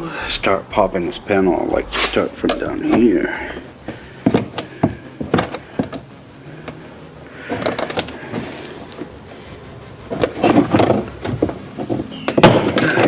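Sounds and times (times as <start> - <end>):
plastic panel rattling and scraping: 3.7 - 13.0.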